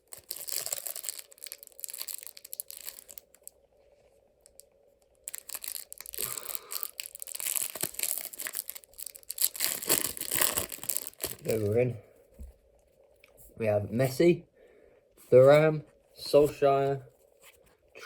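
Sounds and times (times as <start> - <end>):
plastic wrapper crinkling and tearing: 0.0 - 3.6, 4.4 - 11.8.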